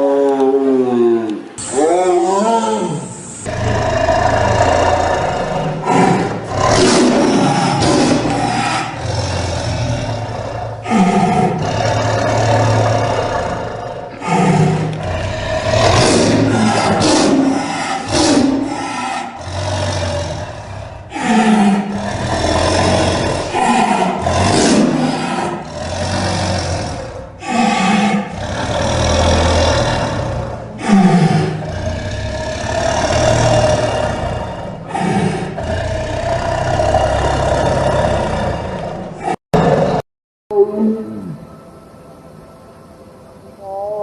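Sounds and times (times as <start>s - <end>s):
tiger roaring and growling: 3.4s - 40.0s.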